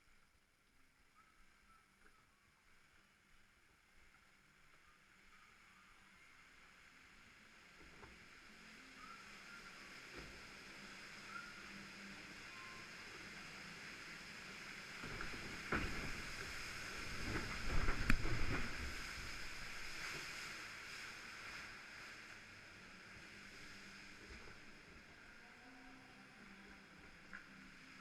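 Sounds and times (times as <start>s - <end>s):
flowing water hiss: 0.0s - 28.0s
boat splashing through water: 14.3s - 22.5s.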